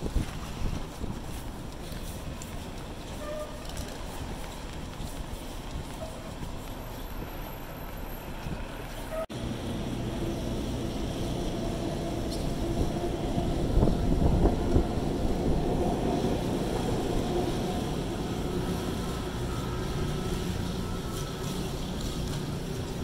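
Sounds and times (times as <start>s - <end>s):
city street traffic: 0.0s - 23.0s.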